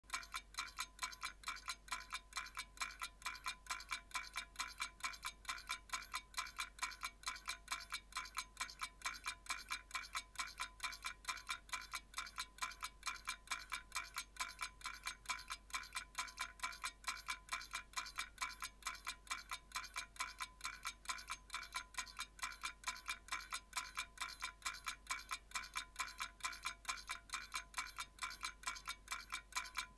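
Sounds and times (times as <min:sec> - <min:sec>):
clock ticking: 0:00.0 - 0:29.9.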